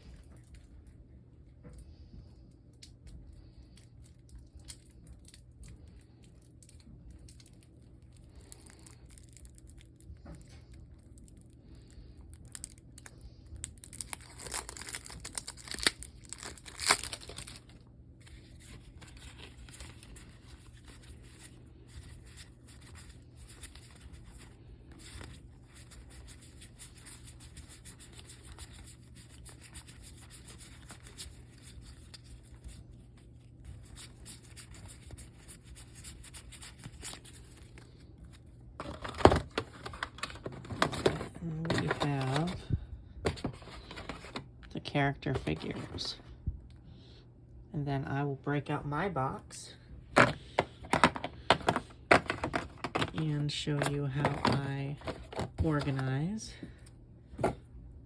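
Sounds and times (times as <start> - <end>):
packaging crinkling and tearing: 3.7 - 44.5.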